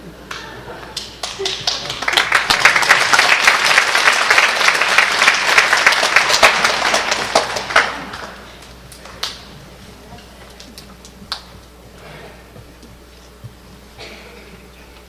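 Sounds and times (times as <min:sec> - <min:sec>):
audience applauding: 0:00.9 - 0:09.4.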